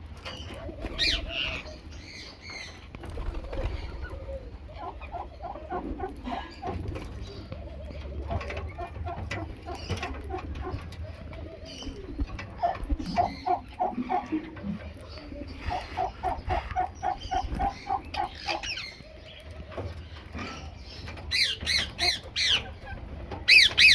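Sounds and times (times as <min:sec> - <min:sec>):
birds low repeated notes: 0:00.0 - 0:23.9
parakeet squawking: 0:23.5 - 0:23.9.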